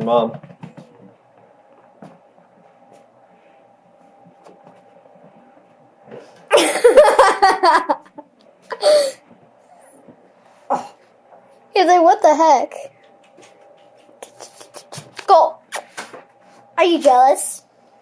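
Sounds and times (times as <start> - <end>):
faint steady hum: 0.0 - 18.0
person laughing loudly: 6.5 - 9.2.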